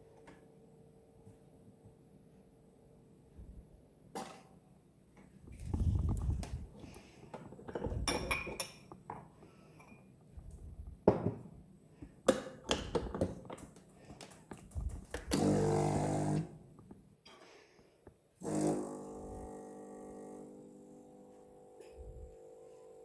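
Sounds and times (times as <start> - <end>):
coffee gear knocking and clinking: 7.6 - 10.0
espresso machine pump buzzing: 15.2 - 16.6, 18.4 - 23.0.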